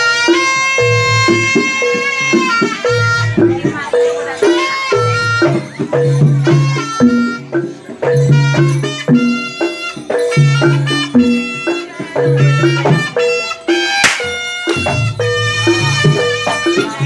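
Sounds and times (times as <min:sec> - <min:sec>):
drums: 0:00.0 - 0:17.0
struck metal percussion: 0:00.0 - 0:17.0
sharp crash: 0:14.0 - 0:14.4.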